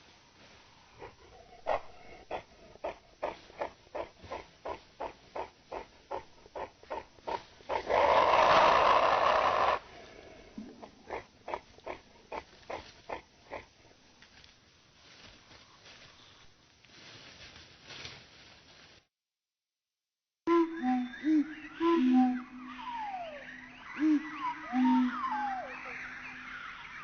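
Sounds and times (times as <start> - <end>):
slowed animal chattering calls: 1.0 - 9.9, 10.8 - 13.7.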